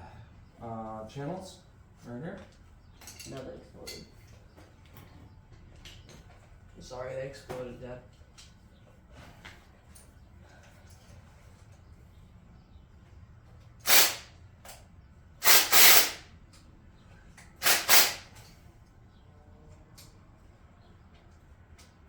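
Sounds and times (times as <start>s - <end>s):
short loud hisses: 13.9s - 14.3s, 15.4s - 16.2s, 17.6s - 18.3s.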